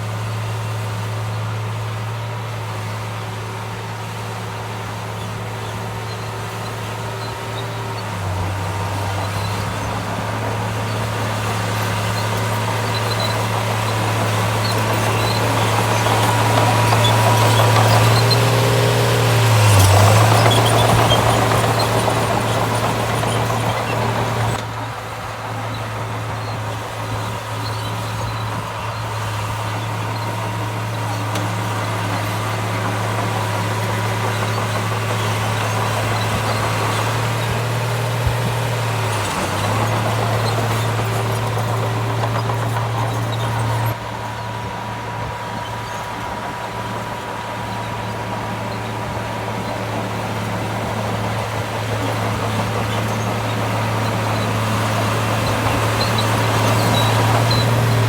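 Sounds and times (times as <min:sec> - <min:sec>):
diesel engine humming: 0:00.0 - 0:58.0.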